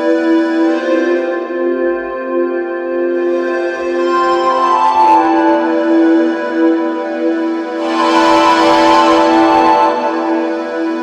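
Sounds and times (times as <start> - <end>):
synthesizer drone: 7.6 - 11.0.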